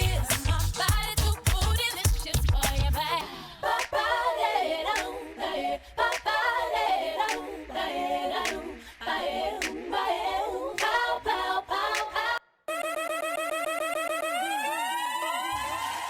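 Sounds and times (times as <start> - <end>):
several voices singing unaccompanied: 0.0 - 12.4.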